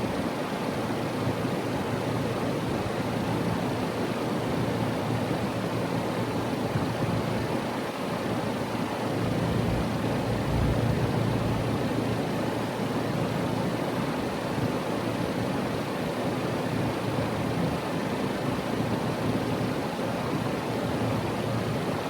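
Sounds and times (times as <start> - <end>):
fan rush of air: 0.0 - 22.0
compressor hum: 9.1 - 12.3.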